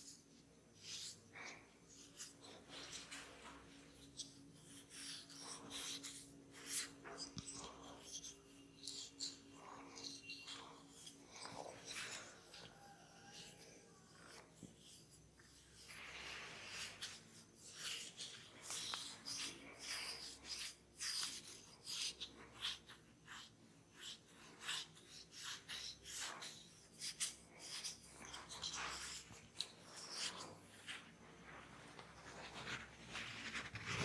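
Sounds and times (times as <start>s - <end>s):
hands rustling through hair: 28.4s - 34.0s.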